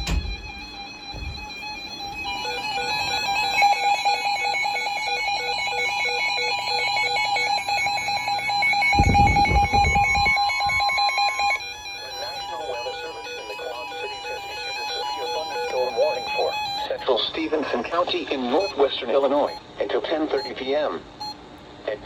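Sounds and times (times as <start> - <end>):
rapid beeping alarm: 0.0 - 21.4
steady warning tone: 0.0 - 22.0.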